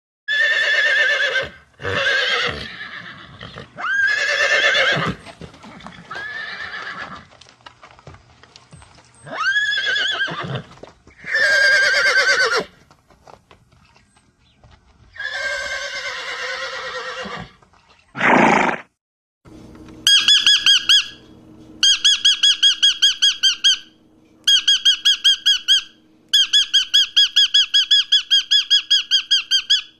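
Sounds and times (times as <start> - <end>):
horse whinnies: 0.3 - 7.3, 9.2 - 12.7, 15.1 - 17.6, 18.2 - 18.9
animal calls: 20.1 - 21.2
parrot squawking: 20.1 - 21.2, 21.8 - 23.9.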